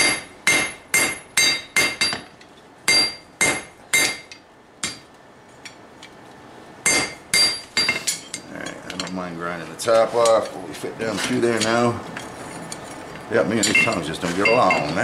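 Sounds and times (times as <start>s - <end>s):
hammer striking steel on anvil: 0.0s - 2.3s, 2.9s - 5.0s, 6.8s - 8.4s.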